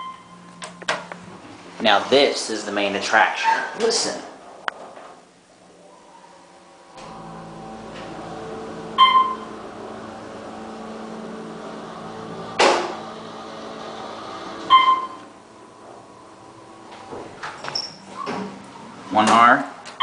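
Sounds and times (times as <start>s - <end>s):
elevator motor humming: 6.4s - 19.1s
electronic chime: 7.0s - 13.5s, 14.6s - 15.3s
loud clunk: 12.5s - 13.1s.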